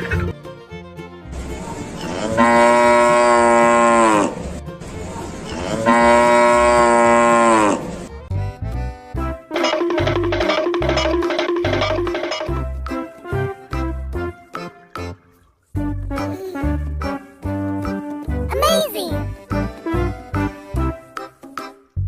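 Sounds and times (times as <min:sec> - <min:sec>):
cow mooing: 0:02.0 - 0:04.4, 0:05.5 - 0:08.0.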